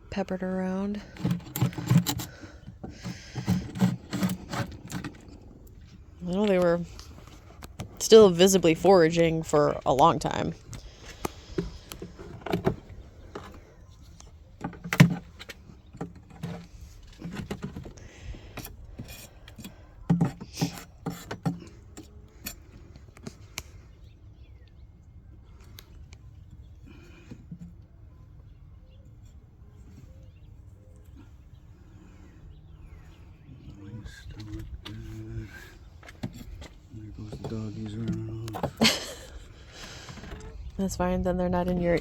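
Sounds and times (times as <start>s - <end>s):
wooden frames clicking and knocking: 1.1s - 6.6s, 11.0s - 22.6s, 36.0s - 40.5s.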